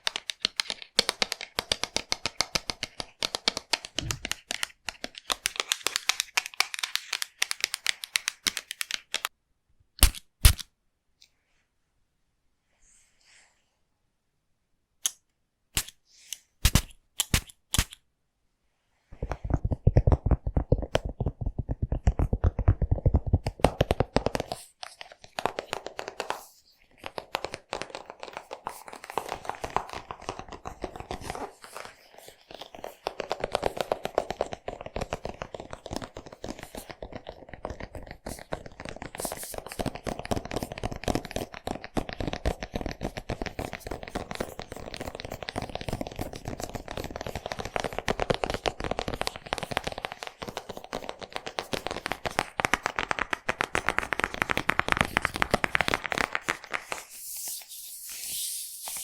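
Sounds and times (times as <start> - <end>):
scissors snipping hair: 16.6 - 18.0.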